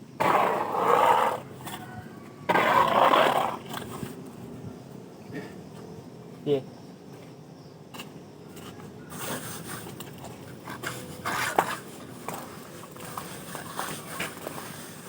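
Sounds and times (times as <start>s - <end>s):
trowel scraping on cement: 9.1s - 10.0s, 10.8s - 15.0s.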